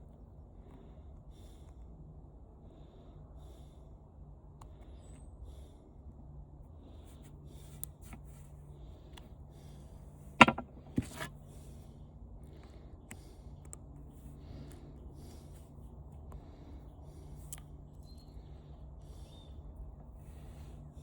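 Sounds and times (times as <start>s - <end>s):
screwdriver clicks and scrapes: 10.4s - 11.3s
sharp knocks: 10.4s - 11.3s.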